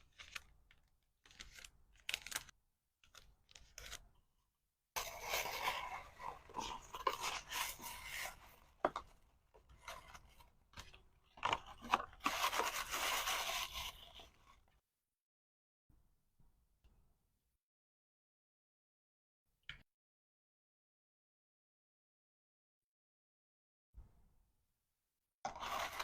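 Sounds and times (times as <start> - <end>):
packaging rustling and crinkling: 0.0 - 4.0.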